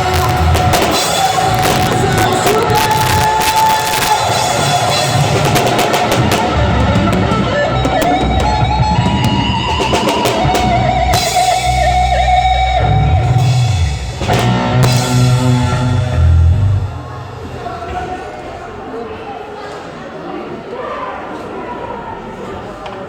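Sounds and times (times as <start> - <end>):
cymbal crashes: 0.0 - 17.8
live band playing: 0.0 - 17.9.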